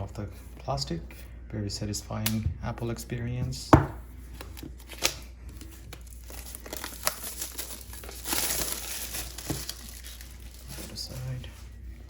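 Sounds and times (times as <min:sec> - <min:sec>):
plastic tearing rustle: 0:04.4 - 0:11.4
plastic wrap crinkling: 0:04.4 - 0:11.5.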